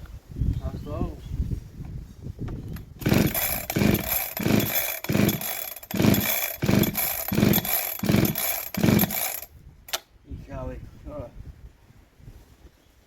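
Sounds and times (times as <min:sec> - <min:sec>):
chainsaw surging unevenly: 0:03.0 - 0:09.5.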